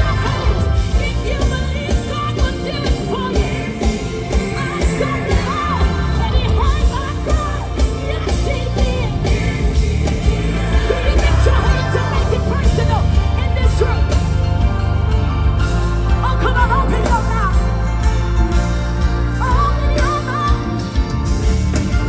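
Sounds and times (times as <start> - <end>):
person singing and shouting: 0.0 - 14.6, 15.9 - 17.7
live gospel band playing: 0.0 - 22.0.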